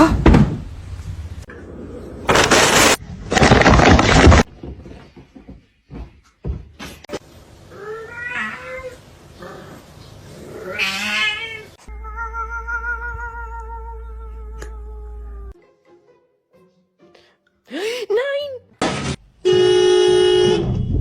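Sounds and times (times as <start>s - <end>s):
cat meowing: 7.7s - 9.0s, 10.6s - 15.6s.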